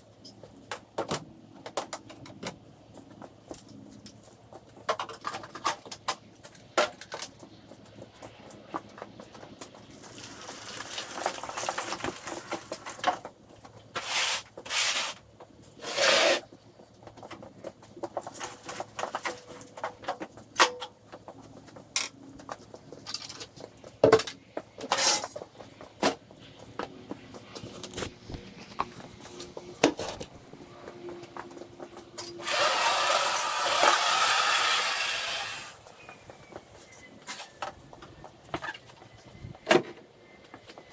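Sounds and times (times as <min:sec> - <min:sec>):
short scraping noises: 0:13.9 - 0:15.2, 0:15.8 - 0:16.5.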